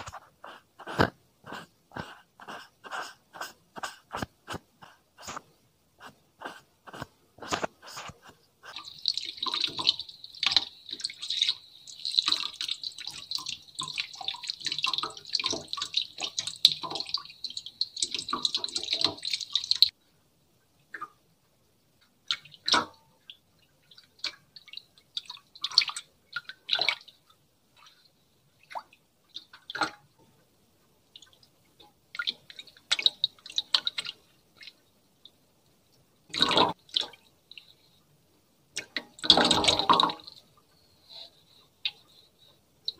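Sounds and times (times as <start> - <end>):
water drips and clicks: 7.4 - 20.0, 20.8 - 21.2, 22.0 - 37.8, 38.7 - 40.8.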